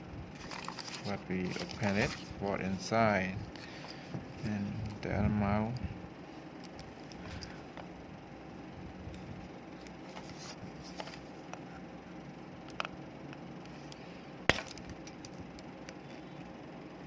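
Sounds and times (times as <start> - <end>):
sharp plastic crack: 14.5 - 15.4.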